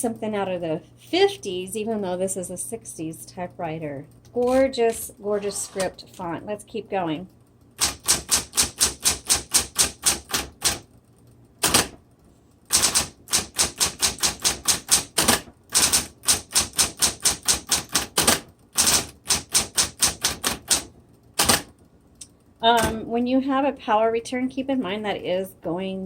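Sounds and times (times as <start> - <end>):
electric typewriter typing: 7.0 - 21.8.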